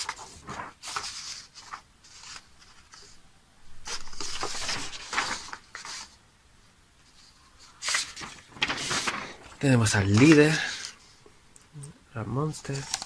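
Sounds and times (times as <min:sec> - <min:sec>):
paper pages rustling: 0:00.0 - 0:03.2, 0:03.8 - 0:06.2, 0:07.0 - 0:11.2, 0:12.6 - 0:13.0.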